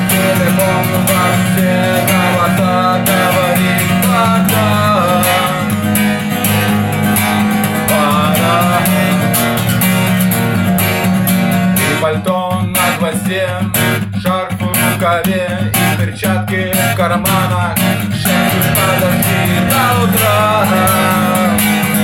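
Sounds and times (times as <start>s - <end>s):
gliding melody line: 0.0s - 11.8s
acoustic guitar strumming: 0.0s - 22.0s.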